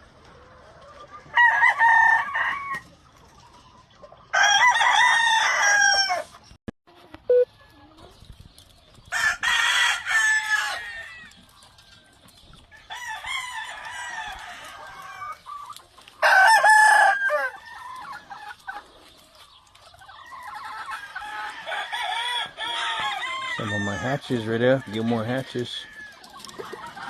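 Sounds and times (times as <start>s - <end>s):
hens clucking: 0.0s - 4.7s, 10.1s - 27.0s
roosters crowing: 0.6s - 2.9s, 4.3s - 6.4s, 9.1s - 18.9s, 20.1s - 27.0s.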